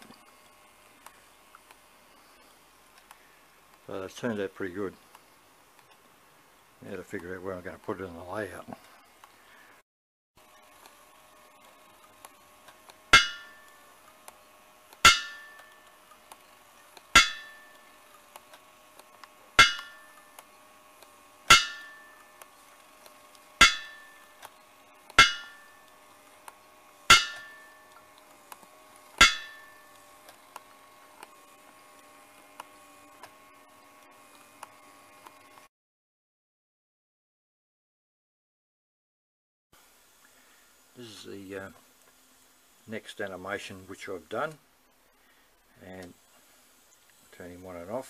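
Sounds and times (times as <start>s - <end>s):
faint steady hum: 0.0s - 9.8s, 10.4s - 35.7s, 39.8s - 48.0s
hammer ringing on an anvil: 13.2s - 13.6s, 15.0s - 15.7s, 17.2s - 17.8s, 19.6s - 20.2s, 21.5s - 22.2s, 23.6s - 24.2s, 25.2s - 25.7s, 27.1s - 27.8s, 29.2s - 29.8s.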